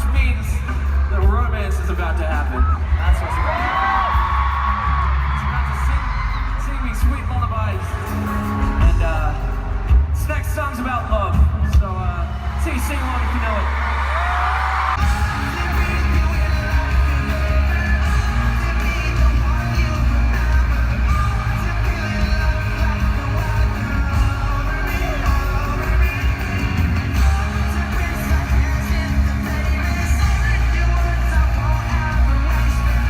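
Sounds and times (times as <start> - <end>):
pop-rock band playing live: 0.0 - 12.7, 14.9 - 33.0
audience yelling and singing along: 0.0 - 33.0
acoustic guitar: 15.0 - 33.0.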